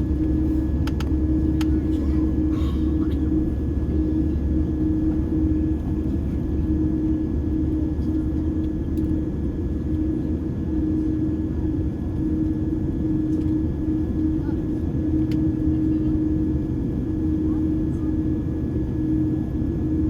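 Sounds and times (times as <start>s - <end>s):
engine hum: 0.0s - 9.4s
jet engines rumbling: 0.0s - 20.0s.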